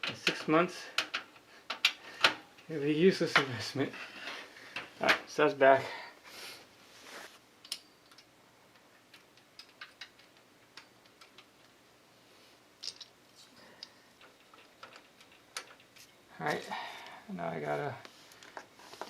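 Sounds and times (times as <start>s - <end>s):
small hardware parts clicking: 7.6s - 8.3s, 9.0s - 11.7s, 12.8s - 13.2s, 13.8s - 16.1s.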